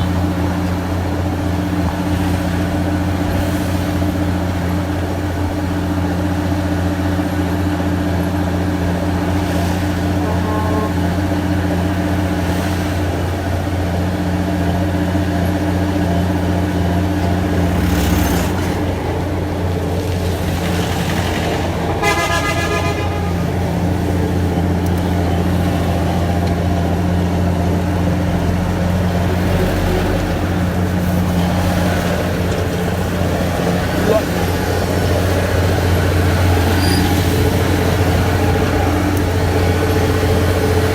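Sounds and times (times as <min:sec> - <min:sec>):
heavy engine running: 0:00.0 - 0:40.9
road traffic: 0:00.0 - 0:40.9
vehicle horn tooting: 0:10.1 - 0:11.4, 0:21.9 - 0:23.9.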